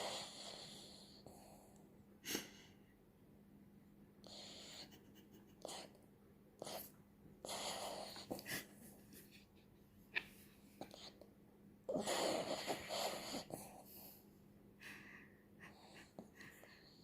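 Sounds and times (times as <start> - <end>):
dog snoring: 0.0 - 1.7, 4.2 - 4.9, 6.6 - 8.5, 11.9 - 13.8.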